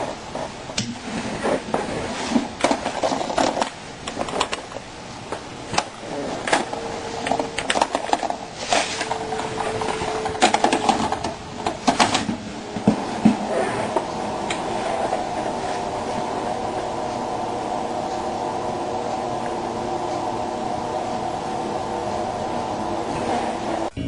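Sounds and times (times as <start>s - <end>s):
faint steady hum: 0.0s - 24.0s
tape player mechanism clicking: 5.7s - 12.3s.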